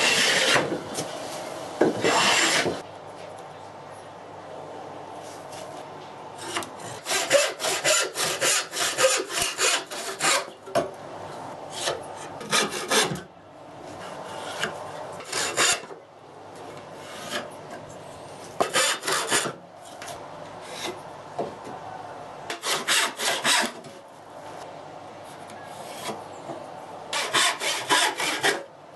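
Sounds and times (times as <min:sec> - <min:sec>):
hand tool rasping on wood: 0:06.9 - 0:10.5, 0:27.2 - 0:28.6.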